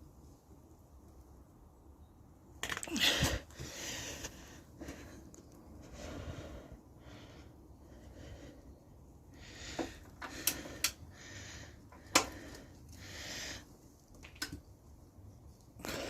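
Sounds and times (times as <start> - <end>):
heavy breathing: 2.9 - 13.8, 15.8 - 16.0.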